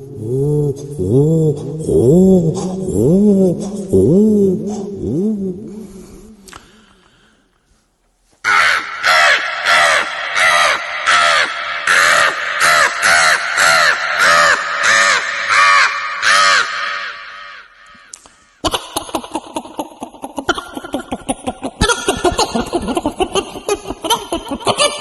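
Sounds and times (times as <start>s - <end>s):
person imitating crow caws: 8.4s - 19.5s.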